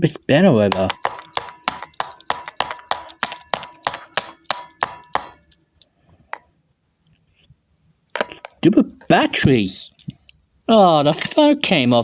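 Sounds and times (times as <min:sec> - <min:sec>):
sharp metallic tapping: 0:00.6 - 0:06.5.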